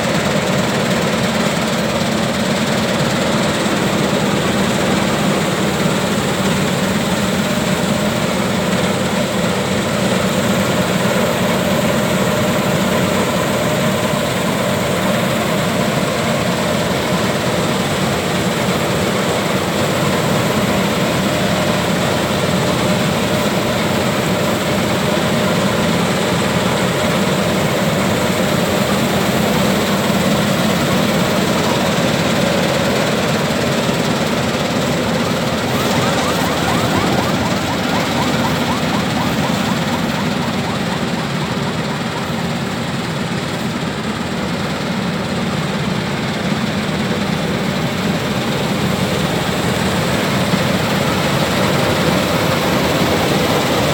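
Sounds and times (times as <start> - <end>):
combine harvester droning: 17.9 - 45.2.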